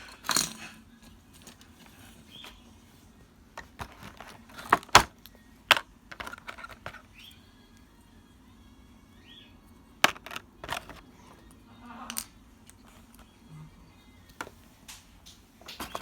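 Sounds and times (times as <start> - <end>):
plastic toy pieces clicking: 10.0 - 11.0.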